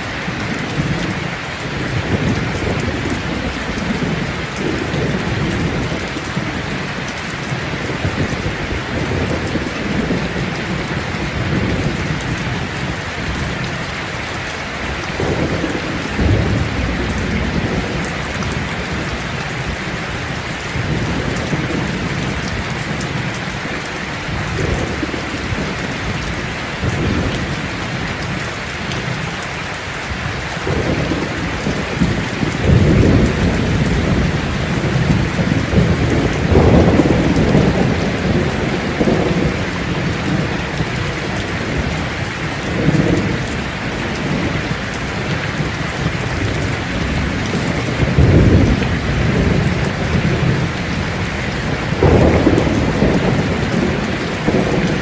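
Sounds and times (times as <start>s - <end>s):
heavy rain: 0.0s - 55.0s
distant thunder rolling: 15.2s - 19.7s, 30.6s - 55.0s.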